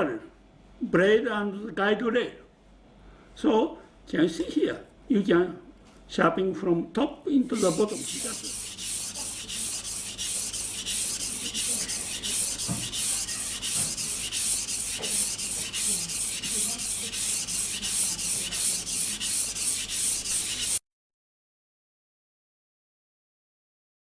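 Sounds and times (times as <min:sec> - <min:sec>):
knife scraping on whetstone: 0:07.6 - 0:20.8.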